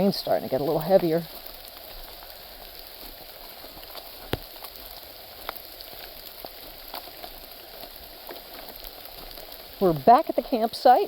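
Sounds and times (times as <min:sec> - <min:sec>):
rain falling steadily: 0:00.0 - 0:11.0.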